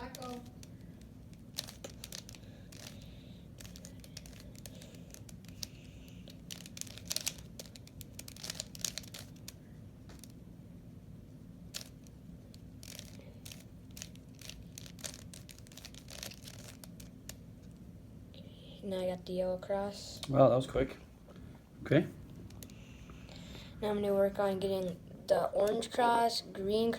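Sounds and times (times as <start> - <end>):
puzzle cube clicking: 0.0 - 9.6, 12.8 - 17.4
faint steady hum: 0.0 - 26.9.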